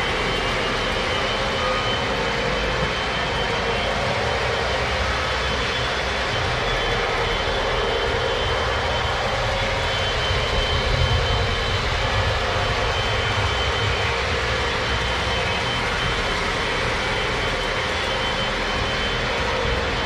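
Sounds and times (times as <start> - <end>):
faint high whine: 0.0 - 20.0.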